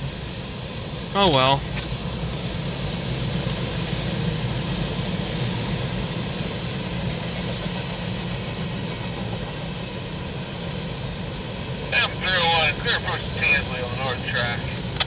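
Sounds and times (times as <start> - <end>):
diesel engine drone: 0.0 - 6.8, 10.8 - 15.0
freight cars rumbling on rails: 0.0 - 15.0.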